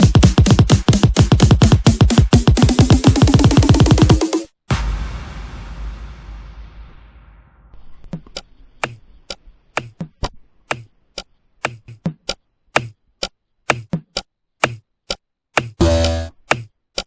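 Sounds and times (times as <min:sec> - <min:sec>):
electronic music: 0:00.0 - 0:05.1, 0:15.8 - 0:16.4.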